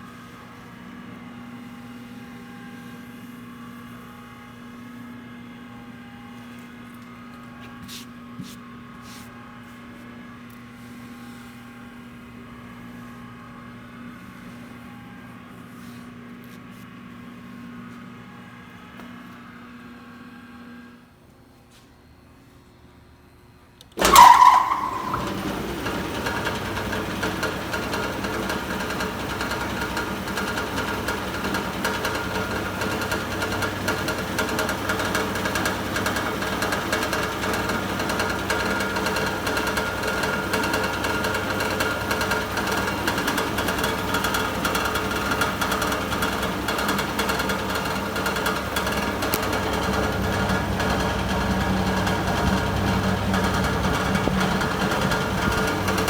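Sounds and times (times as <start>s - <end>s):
sanding machine running: 24.0s - 56.0s.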